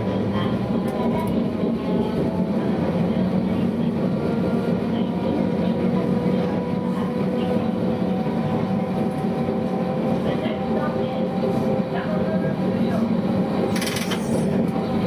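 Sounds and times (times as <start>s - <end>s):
streetcar wheels rumbling: 0.0s - 15.0s.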